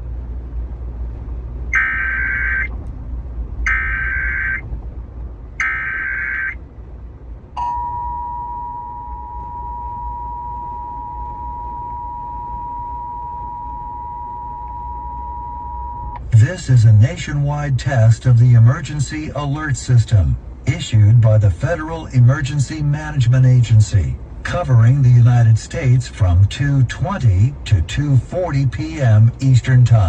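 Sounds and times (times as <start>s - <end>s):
two-tone attention signal: 7.6s - 16.2s.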